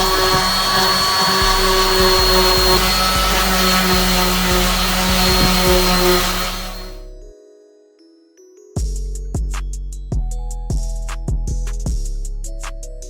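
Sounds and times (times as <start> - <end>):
electric sander running: 0.0 - 7.0.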